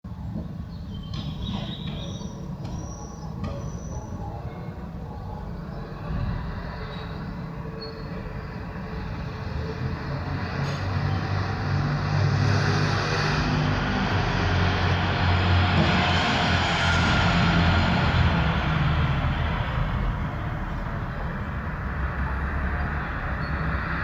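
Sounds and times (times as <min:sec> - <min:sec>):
vehicle approaching: 0:08.3 - 0:24.0.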